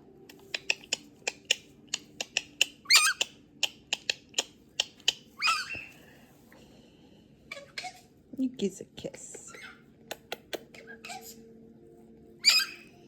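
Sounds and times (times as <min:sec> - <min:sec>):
cockatoo squawks: 0:00.6 - 0:04.2, 0:04.8 - 0:05.9, 0:12.4 - 0:13.0.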